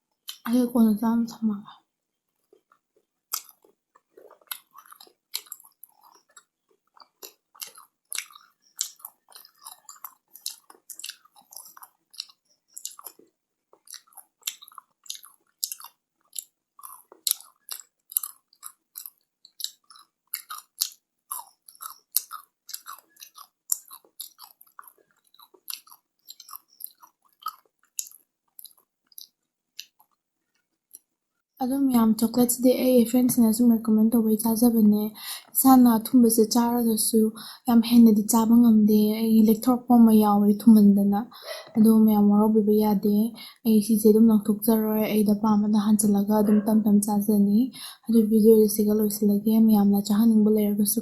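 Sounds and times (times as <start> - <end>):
person chewing with mouth clicks: 0.2 - 0.5, 2.3 - 31.2.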